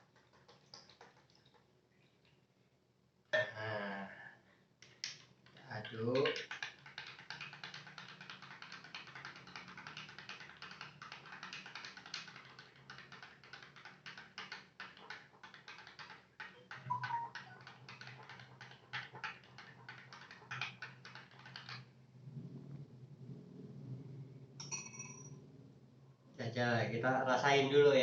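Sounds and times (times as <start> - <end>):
spoon clinking while stirring: 24.6 - 25.3.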